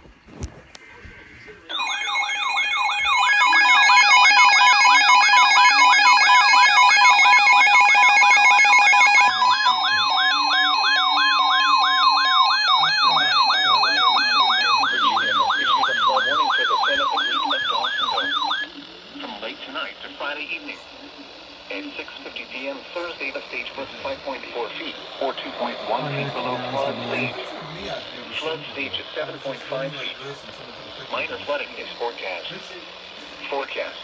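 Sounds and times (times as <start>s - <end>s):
electronic siren yelp: 1.7s - 18.7s
steady siren tones: 1.7s - 18.8s, 23.0s - 31.9s.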